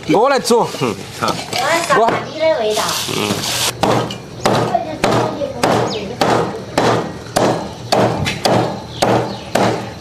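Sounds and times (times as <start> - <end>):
cleaver chopping on wooden board: 3.8 - 9.9.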